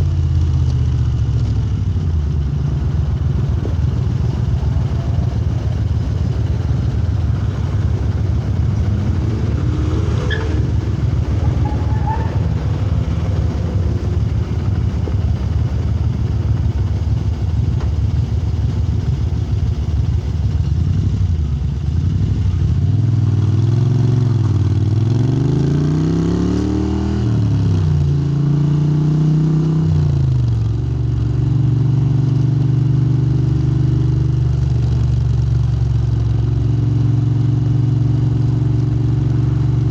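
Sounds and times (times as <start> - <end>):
motorcycle engine revving: 0.0 - 30.4.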